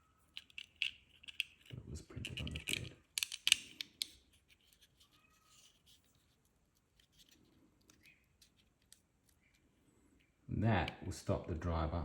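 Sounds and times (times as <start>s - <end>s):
plastic clicks and taps: 2.3s - 4.2s.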